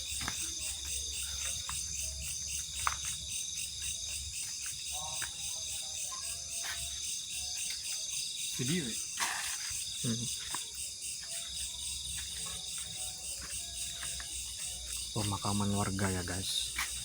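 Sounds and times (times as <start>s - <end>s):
crickets and insects trilling: 0.0s - 17.0s.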